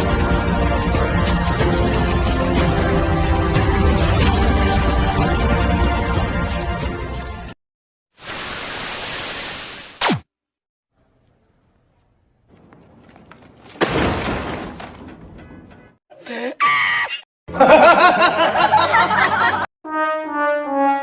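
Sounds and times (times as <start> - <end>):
squeal-like voice: 16.6 - 17.2
descending brass notes: 19.9 - 21.0.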